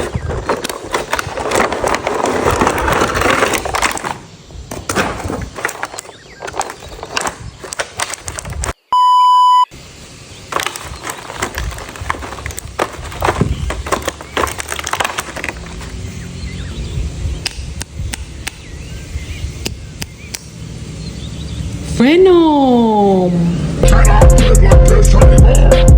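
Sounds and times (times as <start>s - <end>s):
plastic packaging crackling: 0.0s - 8.8s, 10.4s - 16.3s
electronic beep: 8.9s - 9.7s.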